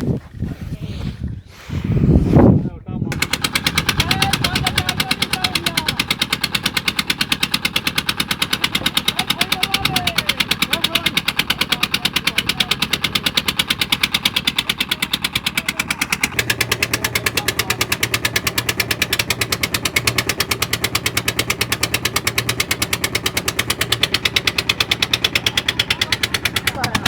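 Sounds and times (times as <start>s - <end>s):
boat engine chugging: 3.0s - 27.0s.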